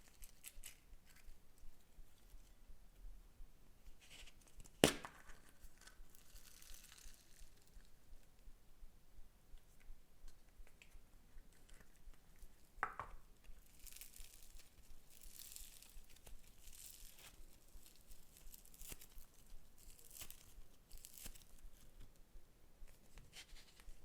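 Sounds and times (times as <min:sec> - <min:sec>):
slime crackling and tearing: 0:04.8 - 0:07.7, 0:13.6 - 0:21.8.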